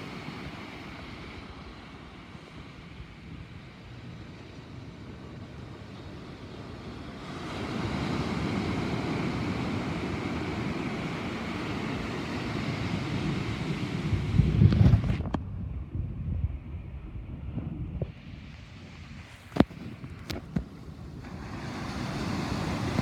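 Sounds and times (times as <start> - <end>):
wind noise on microphone: 6.8 - 23.0.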